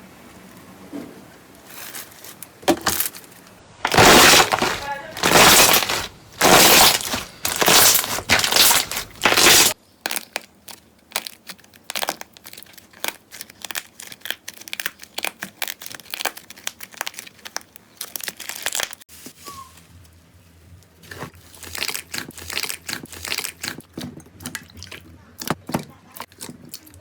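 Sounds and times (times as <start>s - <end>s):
slime squishing by hand: 3.8s - 10.5s
small crackles and pops: 3.8s - 19.0s.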